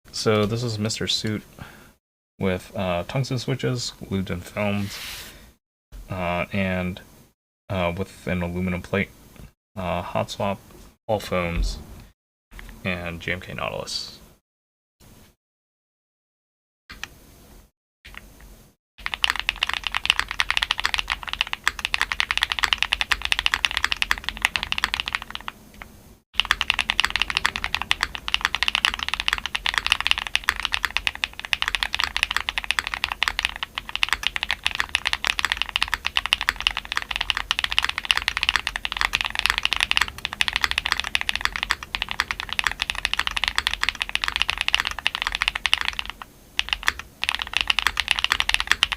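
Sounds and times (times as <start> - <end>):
fast mechanical keyboard typing: 19.0 - 48.9.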